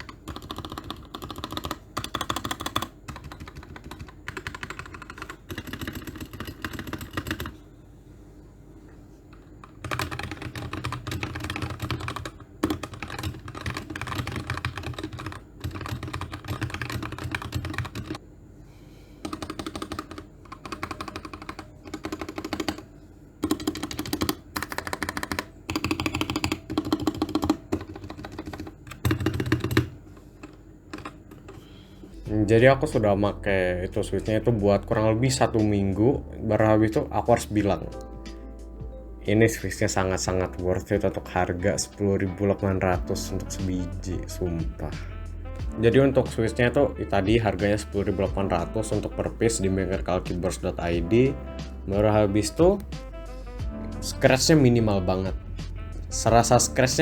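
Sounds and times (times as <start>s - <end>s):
mechanical keyboard keystrokes clacking: 0.0s - 7.6s, 9.6s - 18.2s, 19.2s - 31.6s.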